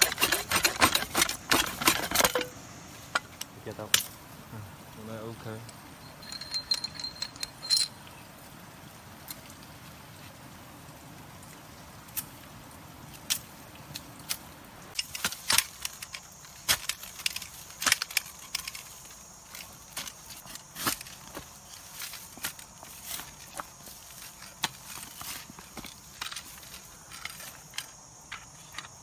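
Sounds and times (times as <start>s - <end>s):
sharp metal clicks and clinks: 5.6s - 8.0s.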